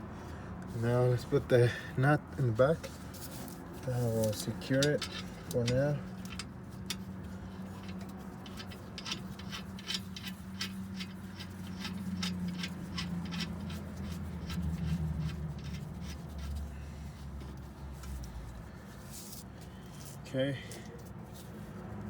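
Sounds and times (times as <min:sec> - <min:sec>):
ratchet wrench clicking: 0:04.8 - 0:16.6.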